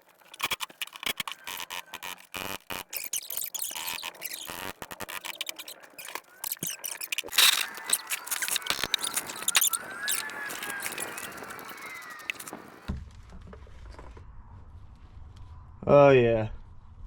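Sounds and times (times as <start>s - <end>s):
short squeaks: 0.3s - 12.9s
metal tools clinking and scraping: 5.4s - 10.2s.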